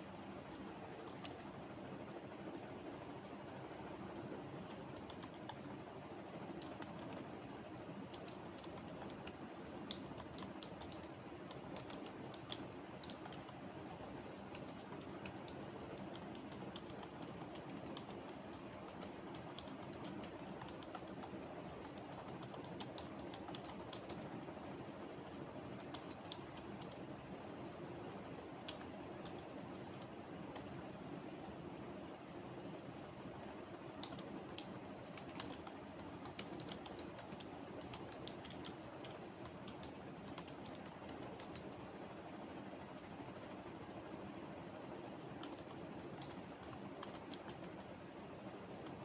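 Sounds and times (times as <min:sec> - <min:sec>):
low background hum: 0:00.0 - 0:49.0
keyboard typing: 0:00.5 - 0:01.5, 0:04.0 - 0:07.3, 0:08.0 - 0:24.3, 0:25.7 - 0:27.1, 0:28.2 - 0:30.8, 0:34.0 - 0:41.9, 0:45.3 - 0:48.0.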